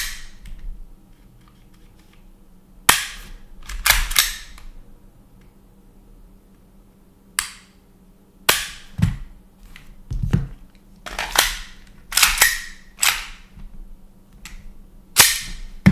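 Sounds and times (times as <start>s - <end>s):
airsoft pistol firing: 15.2s - 15.9s.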